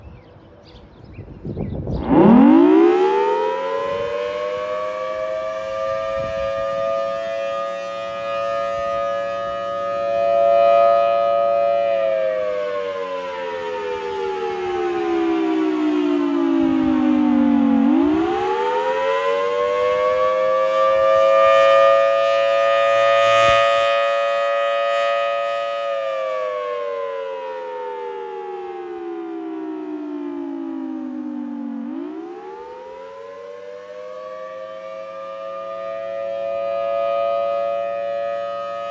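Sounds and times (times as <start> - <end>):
storm siren winding up and down: 1.8 - 38.9.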